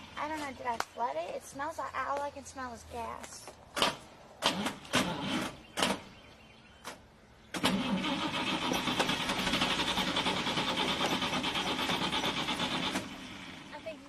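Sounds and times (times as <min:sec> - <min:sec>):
car starter motor cranking: 0:03.8 - 0:06.2, 0:07.5 - 0:13.7.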